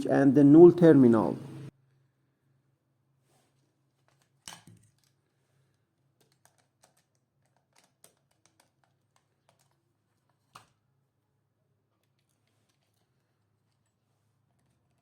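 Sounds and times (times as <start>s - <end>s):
low hum: 0.0s - 1.7s
clicks of handling wires: 4.0s - 5.2s.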